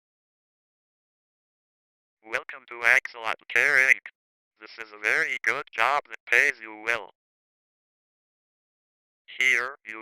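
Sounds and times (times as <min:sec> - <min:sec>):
synthesized voice speaking: 0:02.3 - 0:07.1, 0:09.3 - 0:10.0.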